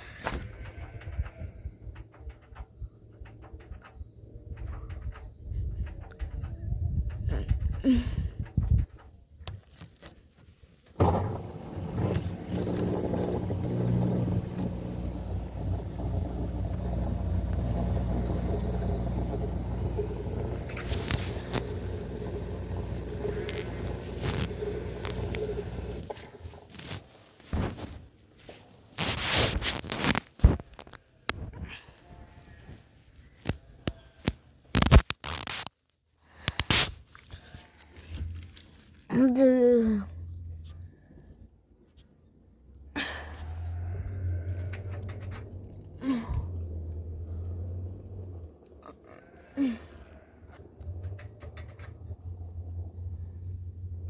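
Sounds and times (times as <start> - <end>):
washing machine motor hum: 11.0 - 26.7, 43.8 - 48.7
loud scraping and scratching: 11.0 - 27.8, 29.0 - 30.6.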